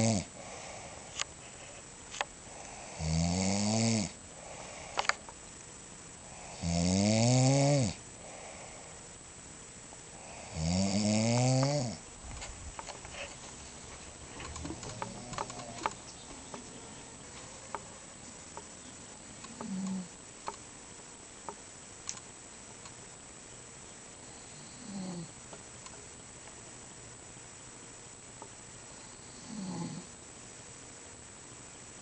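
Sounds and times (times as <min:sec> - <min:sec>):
person snoring: 0:00.0 - 0:01.1, 0:02.5 - 0:05.1, 0:06.2 - 0:09.0, 0:10.2 - 0:12.0, 0:14.4 - 0:16.0, 0:19.5 - 0:20.2, 0:24.3 - 0:25.4, 0:29.0 - 0:30.1
quiet breathing: 0:00.0 - 0:03.1, 0:04.1 - 0:05.3, 0:06.2 - 0:06.7, 0:08.1 - 0:09.2, 0:10.1 - 0:10.7, 0:12.8 - 0:20.2, 0:28.8 - 0:30.2.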